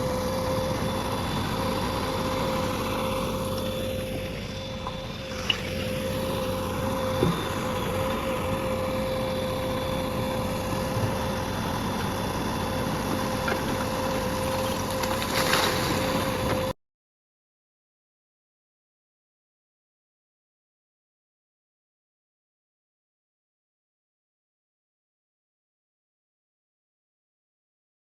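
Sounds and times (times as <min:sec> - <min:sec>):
diesel engine running: 0:00.0 - 0:16.8.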